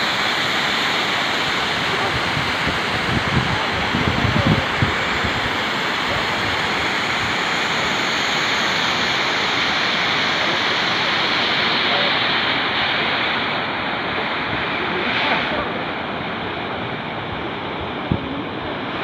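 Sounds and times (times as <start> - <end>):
waterfall rushing: 0.0 - 19.0.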